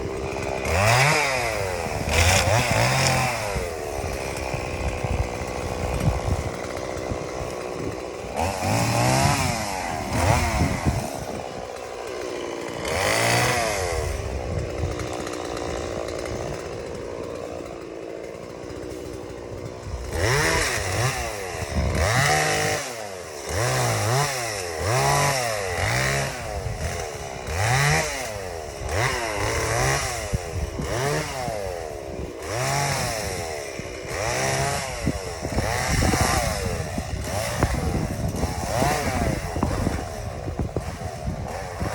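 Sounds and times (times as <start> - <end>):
chainsaw revving: 0.0 - 41.9.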